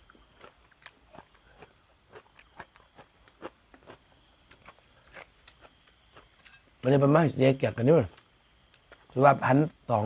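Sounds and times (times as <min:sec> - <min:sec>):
person chewing: 0:00.0 - 0:06.6.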